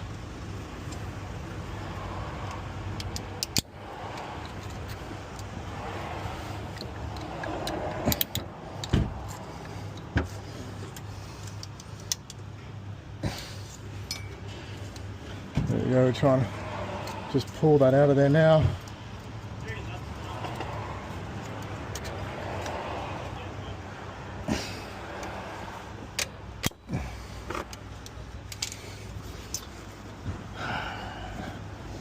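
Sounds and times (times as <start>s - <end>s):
metal tool clicking and scraping: 2.4s - 5.5s, 6.7s - 10.1s, 26.1s - 29.8s.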